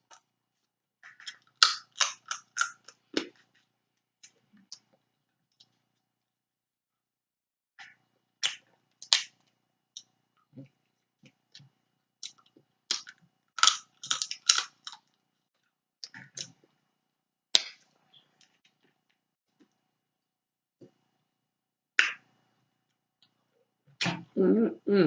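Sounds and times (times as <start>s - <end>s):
crab shells cracking: 1.1s - 3.4s, 12.2s - 15.1s.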